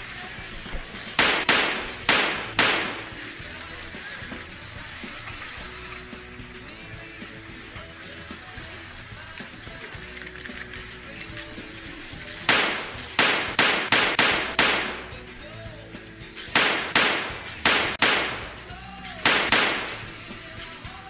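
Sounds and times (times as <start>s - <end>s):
gunshot bangs with echo: 1.2s - 3.2s, 12.5s - 15.1s, 16.6s - 18.6s, 19.2s - 20.2s.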